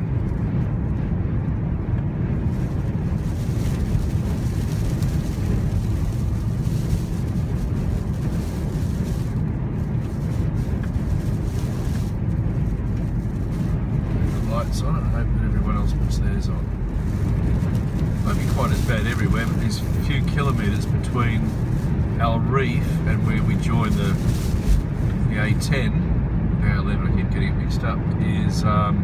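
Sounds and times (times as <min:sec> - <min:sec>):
car driving low rumble: 0:00.0 - 0:29.0
sand pelting car body: 0:18.2 - 0:25.0.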